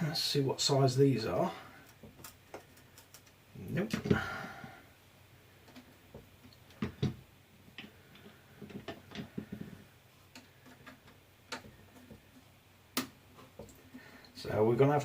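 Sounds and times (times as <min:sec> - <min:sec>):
small tools clicking and tapping: 0:01.9 - 0:03.4.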